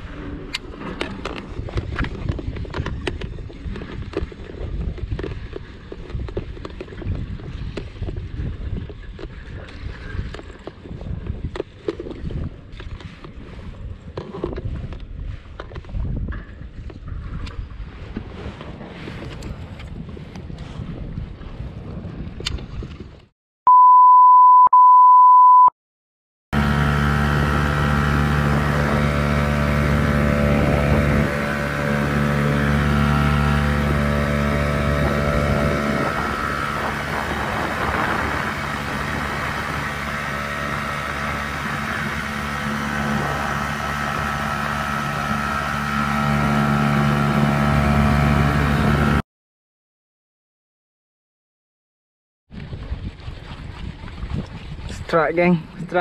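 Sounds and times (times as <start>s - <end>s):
outboard motor running: 0.0s - 18.4s, 26.6s - 49.2s, 52.5s - 56.0s
electronic beep: 23.7s - 25.7s.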